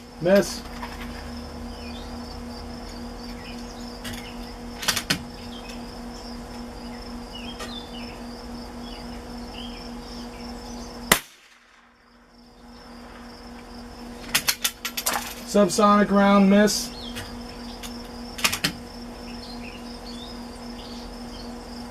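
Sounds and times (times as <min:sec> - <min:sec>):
insect buzzing: 0:00.0 - 0:11.3, 0:11.9 - 0:21.9
rifle shot: 0:11.1 - 0:12.0.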